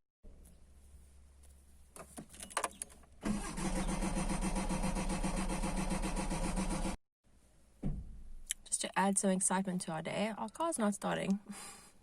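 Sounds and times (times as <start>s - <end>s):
starter motor cranking engine: 3.2s - 7.0s.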